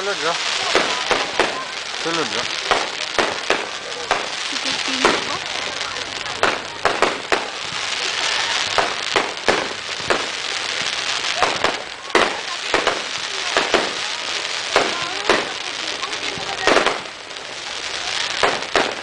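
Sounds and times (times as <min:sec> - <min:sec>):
crackling hiss of fireworks: 0:00.0 - 0:19.0
fireworks bangs: 0:00.0 - 0:19.0.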